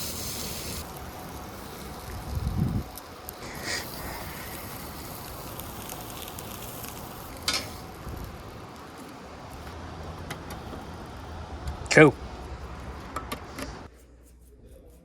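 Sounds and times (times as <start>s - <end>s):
steak sizzling in a pan: 0.0s - 0.9s.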